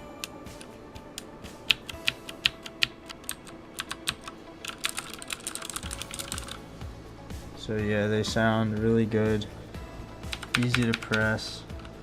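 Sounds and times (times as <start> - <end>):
mechanical keyboard typing: 1.7 - 6.6, 10.3 - 12.0.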